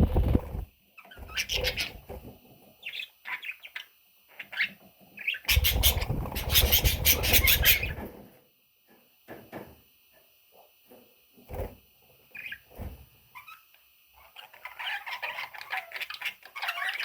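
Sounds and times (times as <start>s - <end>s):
baby budgerigars chirping: 1.0s - 2.0s, 2.8s - 8.0s, 12.3s - 12.7s, 13.3s - 17.0s.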